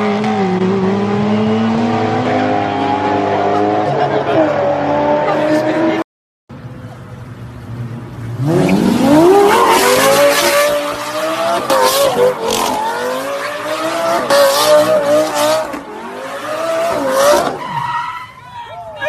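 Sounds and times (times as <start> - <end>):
car engine revving: 7.6 - 17.7
tyres squealing: 16.3 - 19.0.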